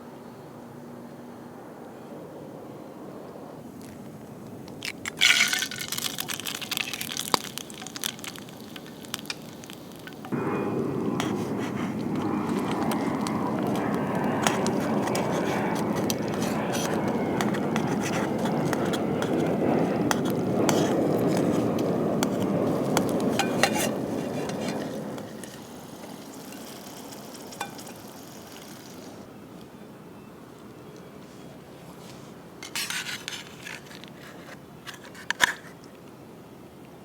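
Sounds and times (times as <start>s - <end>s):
campfire crackles and clicks: 3.8s - 29.3s
food sizzling in a pot: 23.0s - 29.2s.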